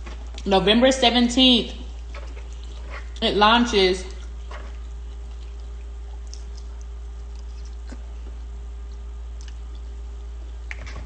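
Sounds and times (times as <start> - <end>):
low electrical hum: 0.0 - 11.0
person chewing food: 1.8 - 3.2, 4.0 - 11.0.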